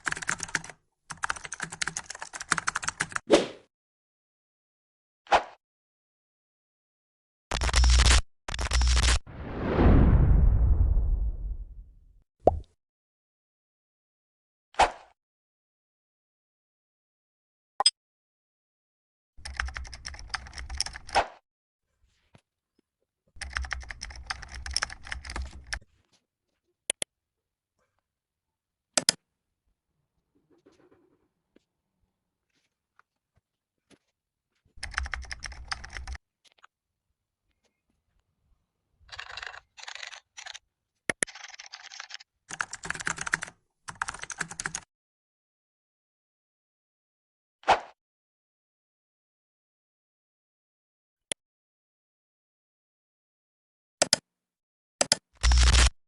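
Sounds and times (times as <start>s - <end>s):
keyboard typing: 0.0s - 3.2s, 7.5s - 9.2s, 19.4s - 21.2s, 23.4s - 25.8s, 34.8s - 36.2s, 39.1s - 44.9s.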